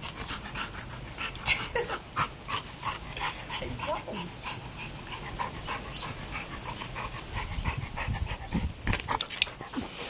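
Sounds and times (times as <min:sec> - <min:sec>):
dog panting: 0:00.0 - 0:09.9.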